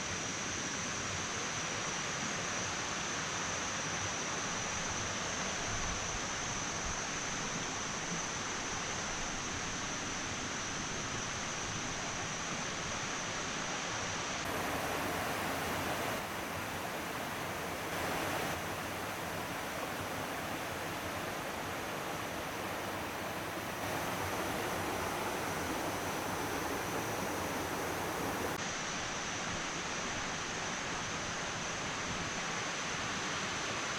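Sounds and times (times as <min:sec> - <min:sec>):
waterfall rushing: 0:14.4 - 0:28.6.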